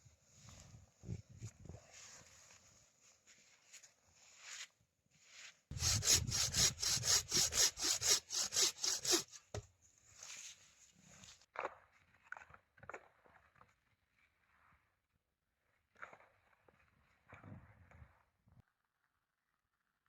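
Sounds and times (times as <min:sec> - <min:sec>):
hand saw cutting wood: 0:05.7 - 0:09.6.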